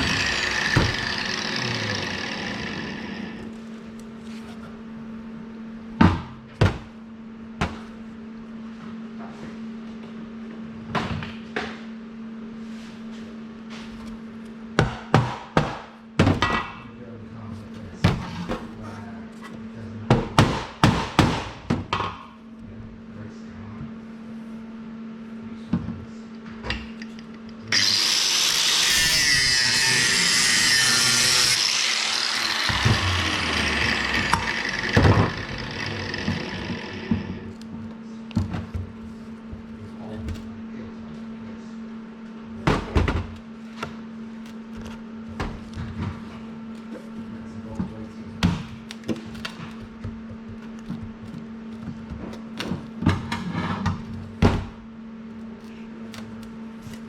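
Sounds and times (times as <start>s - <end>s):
power tool running: 0.0s - 3.7s, 27.6s - 37.6s.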